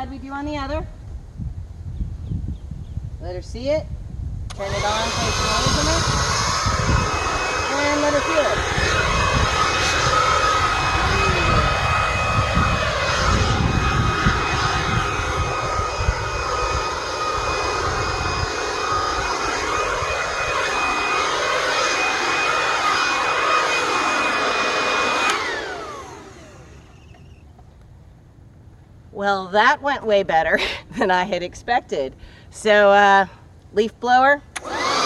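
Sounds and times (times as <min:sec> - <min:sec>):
gusty low rumble: 0:00.0 - 0:27.0
leaf blower whining: 0:04.5 - 0:27.9, 0:34.5 - 0:35.0.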